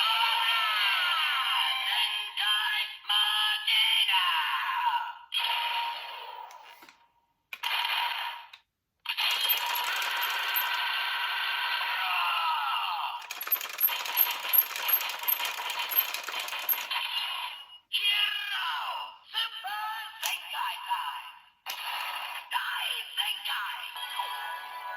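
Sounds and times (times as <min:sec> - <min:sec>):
toy electronic sound effects: 0:07.6 - 0:11.5, 0:13.2 - 0:17.8.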